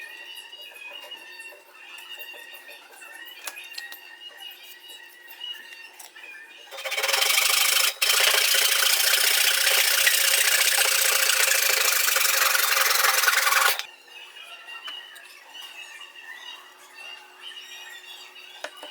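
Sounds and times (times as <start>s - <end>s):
tool rasping on hard material: 6.7s - 13.9s.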